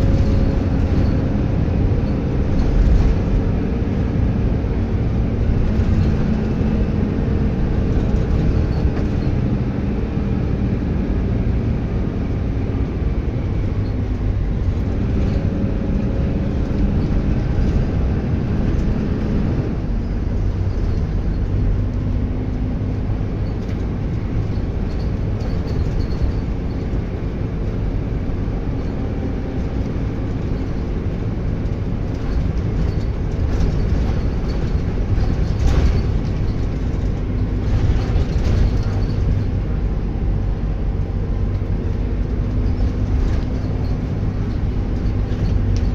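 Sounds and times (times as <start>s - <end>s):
diesel bus engine rumbling: 0.0s - 45.9s
road noise: 0.0s - 45.9s.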